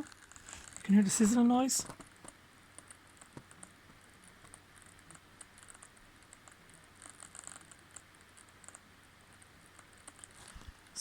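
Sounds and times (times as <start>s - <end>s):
laptop sizzling crackle: 0.0s - 11.0s.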